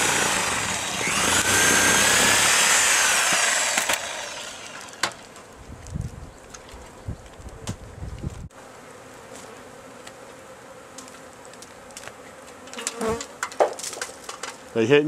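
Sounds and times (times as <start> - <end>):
honeybees buzzing: 0.0 - 15.0.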